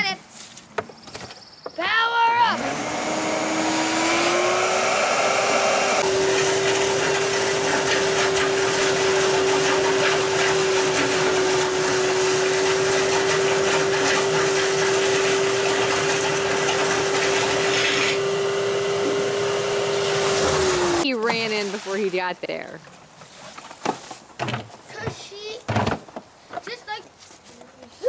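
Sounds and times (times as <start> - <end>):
shop vac motor whine: 2.4 - 21.0
water being sucked up: 2.7 - 22.2.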